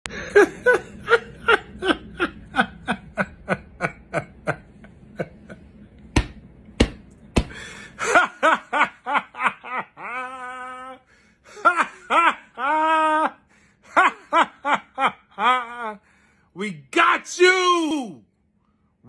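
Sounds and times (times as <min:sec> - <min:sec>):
rhythmic laughter: 0:00.1 - 0:05.9, 0:07.5 - 0:16.0.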